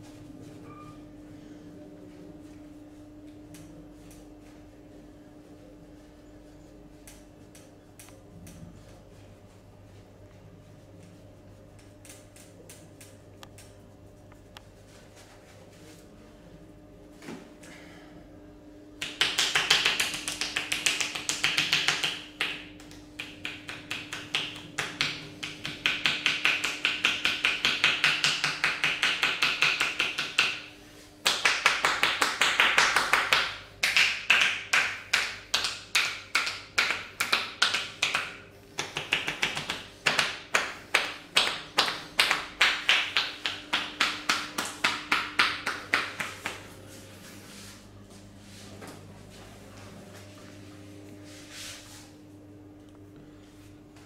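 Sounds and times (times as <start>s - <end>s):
hands striking body in massage: 19.0s - 30.6s.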